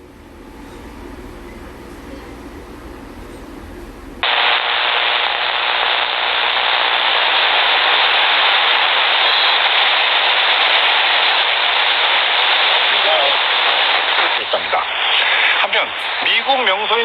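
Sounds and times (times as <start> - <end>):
radio static hiss: 4.2 - 17.0.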